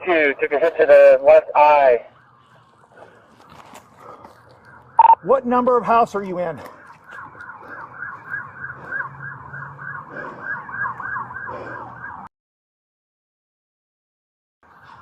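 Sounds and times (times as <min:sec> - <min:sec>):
siren wailing in fast yelp: 0:00.0 - 0:03.5, 0:04.5 - 0:12.3.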